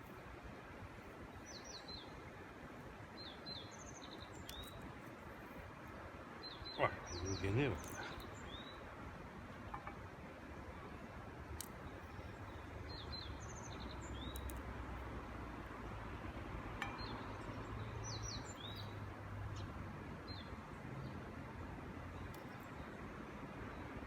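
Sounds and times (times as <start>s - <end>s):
steady background hiss: 0.0s - 24.0s
small birds chirping: 1.3s - 9.9s, 11.6s - 15.7s, 16.8s - 21.3s, 22.0s - 24.0s.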